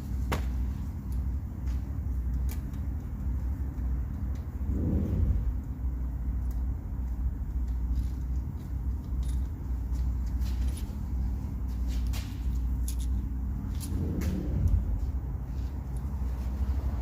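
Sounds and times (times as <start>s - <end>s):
steady low hum: 0.0s - 17.0s
small metal parts clinking: 8.9s - 9.7s, 12.4s - 14.0s.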